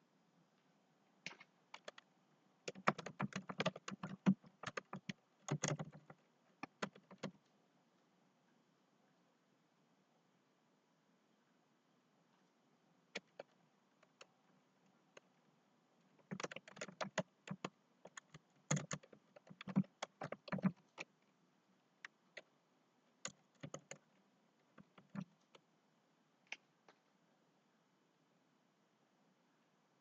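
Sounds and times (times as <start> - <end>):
keyboard typing clicks: 1.3 - 2.0, 2.7 - 7.4, 13.2 - 14.3, 16.2 - 21.1, 23.2 - 24.1, 24.7 - 25.6.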